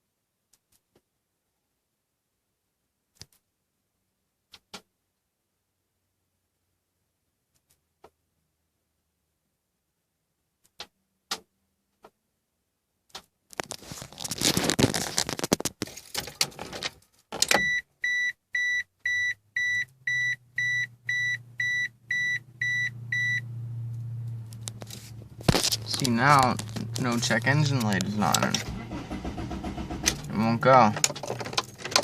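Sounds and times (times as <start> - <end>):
rustling: 13.5 - 17.4, 24.6 - 30.2.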